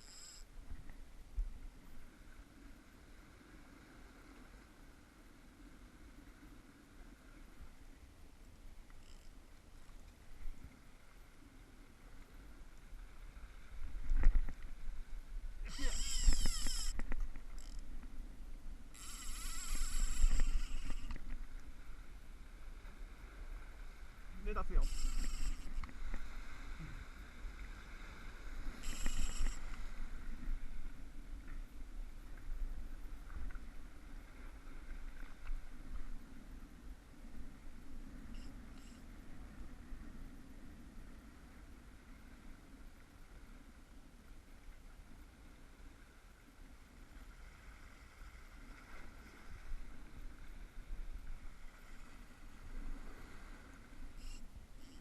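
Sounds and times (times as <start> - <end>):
high rasping burst: 15.7 - 17.0, 19.0 - 21.1, 24.5 - 25.8.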